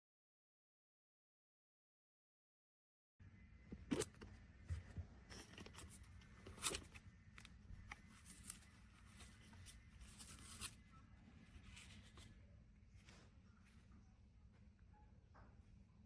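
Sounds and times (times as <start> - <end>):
low steady hum: 3.2 - 16.0
handling clicks and rustles: 3.7 - 10.9.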